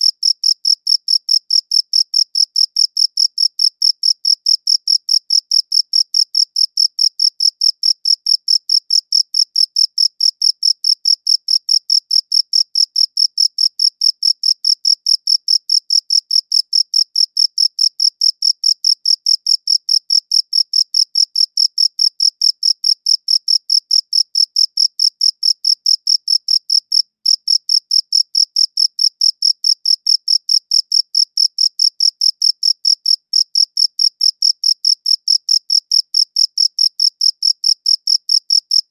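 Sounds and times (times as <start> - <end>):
cricket chirping: 0.0 - 38.9.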